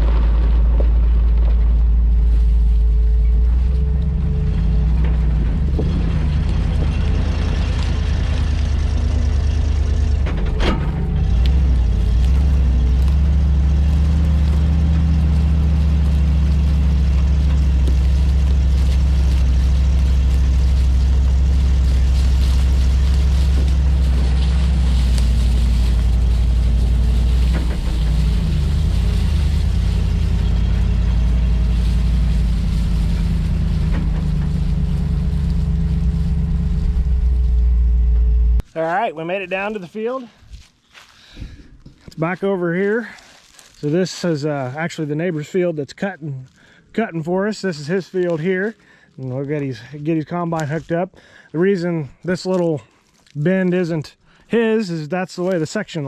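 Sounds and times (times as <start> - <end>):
truck engine droning: 0.0 - 38.6.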